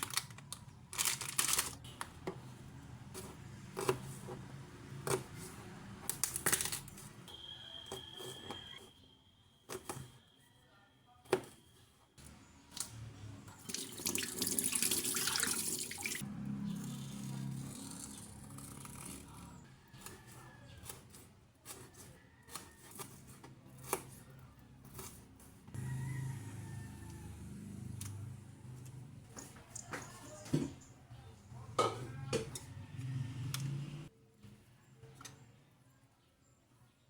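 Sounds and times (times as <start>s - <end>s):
dishes clicking and knocking: 31.7s - 32.7s.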